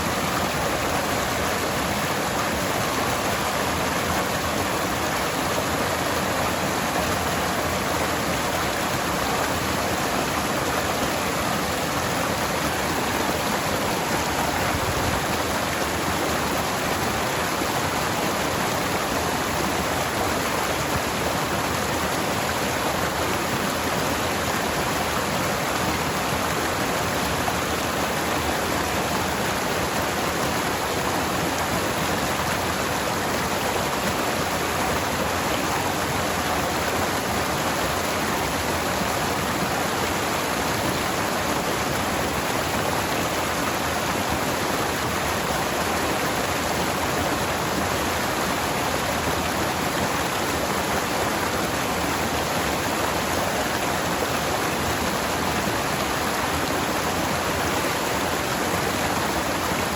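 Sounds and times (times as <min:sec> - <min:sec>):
stream flowing over rocks: 0:00.0 - 0:59.9.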